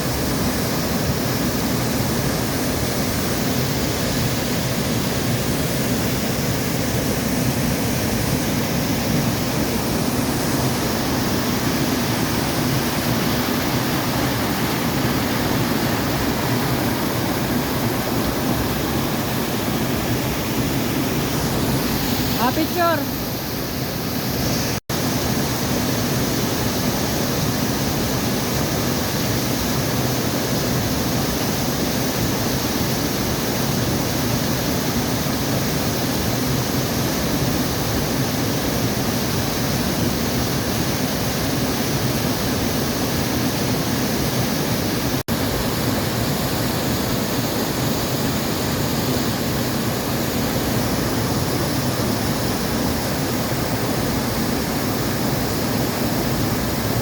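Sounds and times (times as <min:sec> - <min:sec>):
waterfall rushing: 0:00.0 - 0:34.1.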